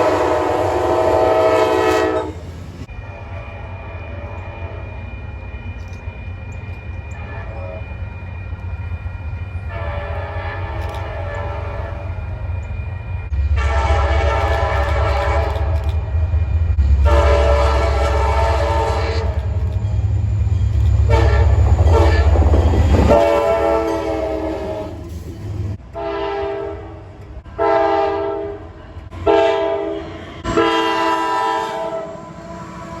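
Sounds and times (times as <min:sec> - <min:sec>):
train horn blasts: 0:00.0 - 0:05.0, 0:07.1 - 0:08.0, 0:09.6 - 0:12.3, 0:13.3 - 0:16.1, 0:16.9 - 0:19.8, 0:21.0 - 0:25.2, 0:25.8 - 0:33.0
train rumble and rail clatter: 0:00.0 - 0:33.0.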